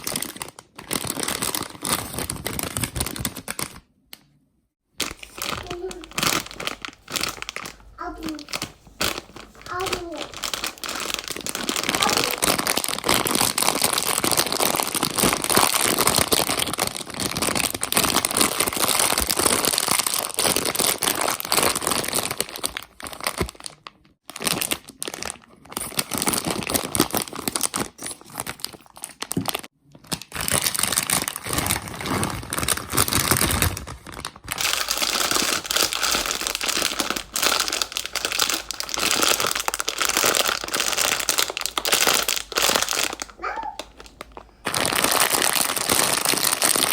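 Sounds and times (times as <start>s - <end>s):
plastic bags crinkling: 0.0s - 3.9s, 4.9s - 46.9s.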